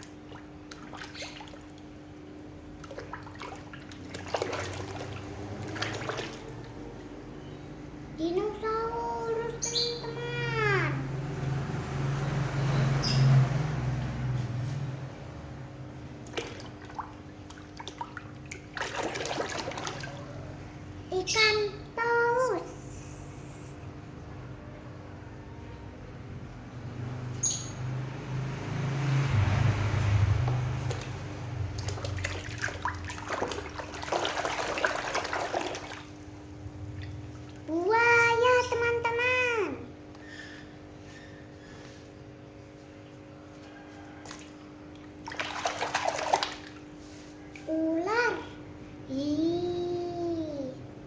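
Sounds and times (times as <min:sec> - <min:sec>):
water trickling and splashing: 0:00.0 - 0:02.0, 0:02.8 - 0:06.9, 0:16.2 - 0:20.5, 0:28.2 - 0:37.8, 0:44.0 - 0:47.7.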